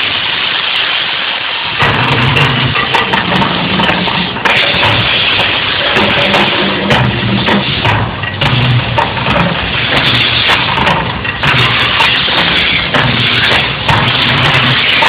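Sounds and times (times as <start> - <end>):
rushing eruption roar: 0.0 - 15.0
deep pulsing tones: 1.8 - 15.0.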